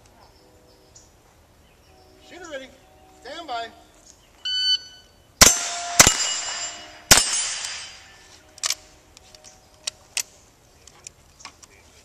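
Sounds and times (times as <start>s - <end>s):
rifle shots: 5.4s - 8.2s
steel target plates ringing: 5.4s - 8.4s.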